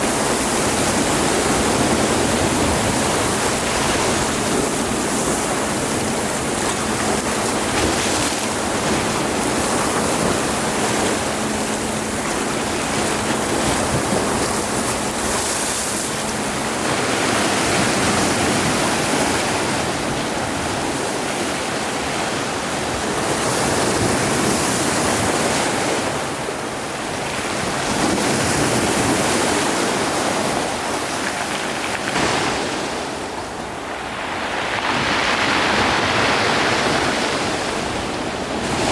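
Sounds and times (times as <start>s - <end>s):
sea waves rushing: 0.0s - 38.9s.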